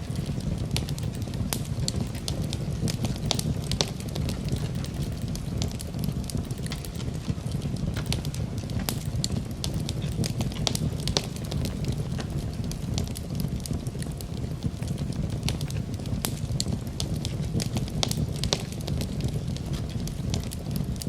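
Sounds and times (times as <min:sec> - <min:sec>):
campfire crackling and popping: 0:00.0 - 0:21.0.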